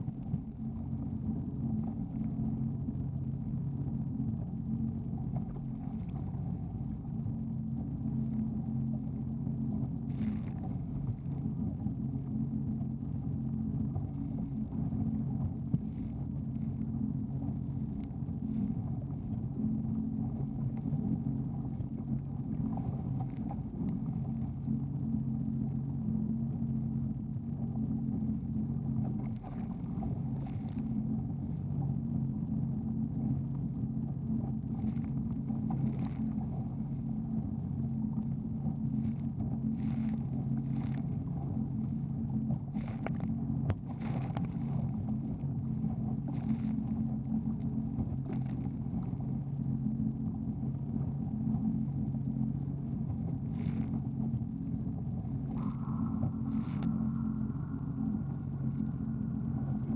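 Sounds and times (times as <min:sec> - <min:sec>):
jet ski engine running: 0:00.0 - 0:59.9
high whine: 0:33.6 - 0:59.9.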